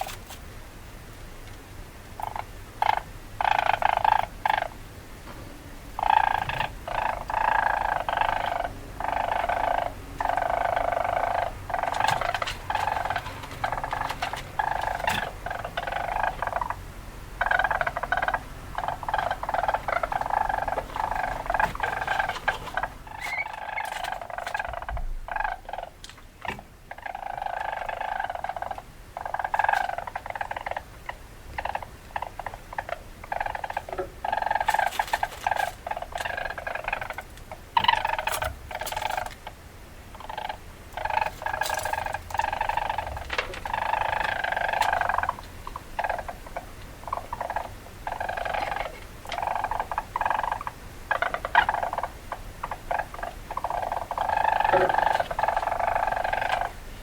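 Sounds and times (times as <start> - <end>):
weasel chattering: 2.2 - 4.8, 6.0 - 56.8.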